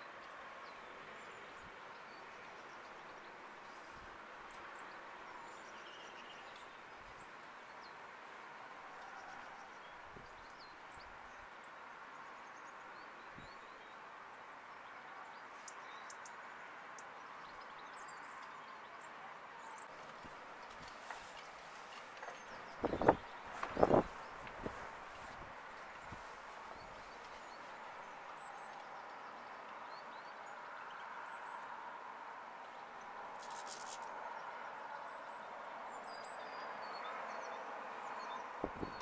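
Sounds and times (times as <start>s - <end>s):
outdoor background hiss: 0.0s - 39.0s
small birds chirping: 15.2s - 31.7s, 32.7s - 34.2s.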